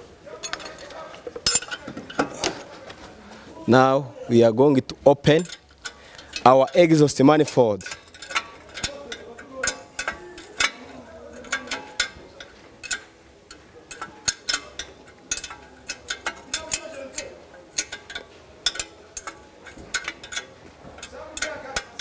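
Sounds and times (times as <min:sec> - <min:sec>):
metal tools clinking on nuts: 0:00.3 - 0:02.7, 0:04.7 - 0:22.0.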